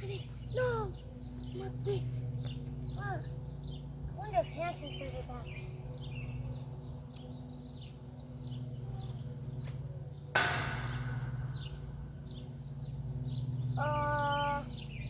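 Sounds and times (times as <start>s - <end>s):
small birds chirping: 0.0s - 15.0s
steady low hum: 0.0s - 15.0s
sharp ringing bang: 10.3s - 12.5s.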